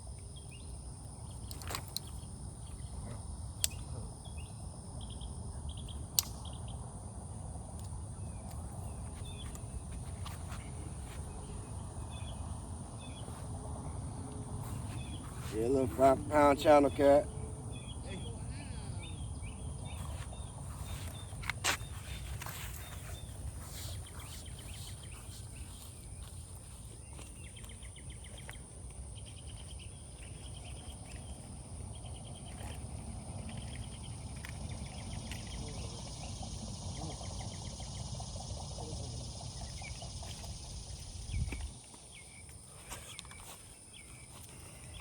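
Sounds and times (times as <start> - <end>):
insect and bird chirps: 0.0 - 45.0
sharp click: 6.2 - 6.5.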